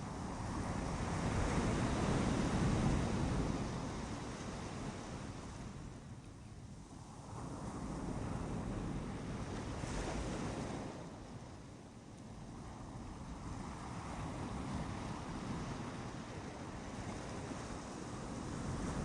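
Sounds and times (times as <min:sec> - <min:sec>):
ocean surf on a beach: 0:00.0 - 0:19.0.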